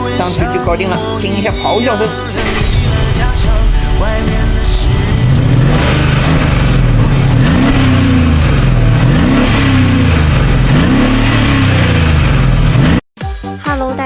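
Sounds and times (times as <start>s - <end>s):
car engine revving: 2.4s - 13.0s.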